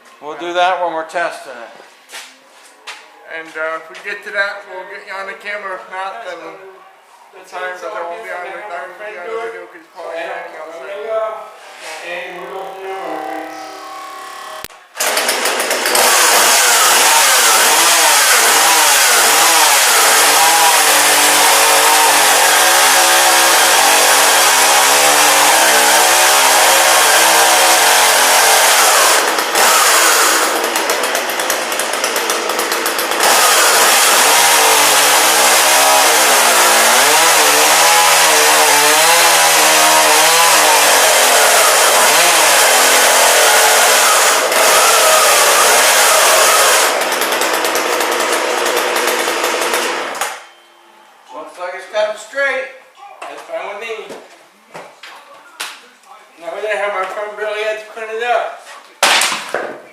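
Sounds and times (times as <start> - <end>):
chainsaw engine revving: 12.5 - 50.4.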